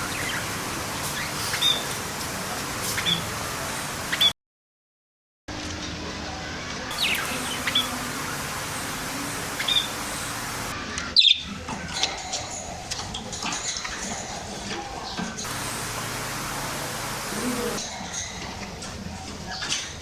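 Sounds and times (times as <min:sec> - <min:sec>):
pigeons chirping: 0:00.0 - 0:04.3, 0:06.9 - 0:11.5, 0:15.0 - 0:17.8.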